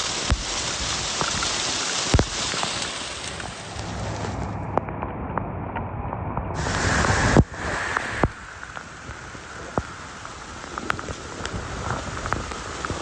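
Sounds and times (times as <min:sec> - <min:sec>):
rain: 0:00.0 - 0:05.9, 0:06.6 - 0:13.0
wind: 0:00.0 - 0:13.0
loud rushing swell: 0:03.4 - 0:09.8.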